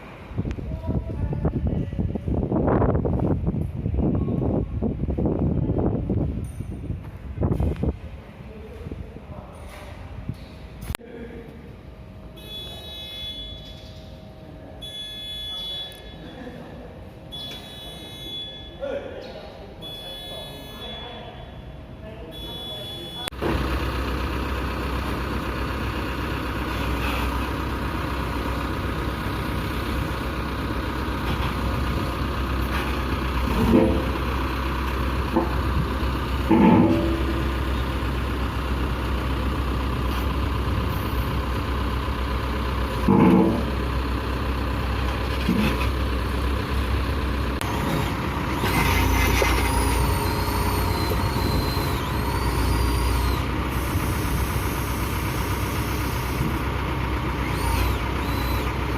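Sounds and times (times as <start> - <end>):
diesel engine running: 19.8 - 58.9.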